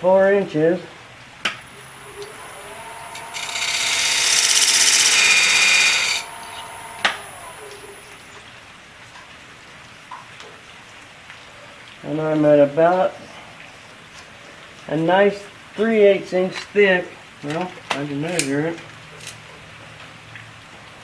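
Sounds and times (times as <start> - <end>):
tool rubbing spinning wood: 1.6 - 8.2
wood lathe spinning: 1.6 - 8.3.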